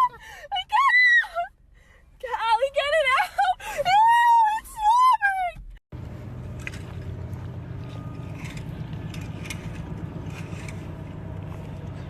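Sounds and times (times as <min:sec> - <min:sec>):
low mechanical hum: 0:05.9 - 0:12.0
light clicks and scrapes: 0:06.4 - 0:12.0.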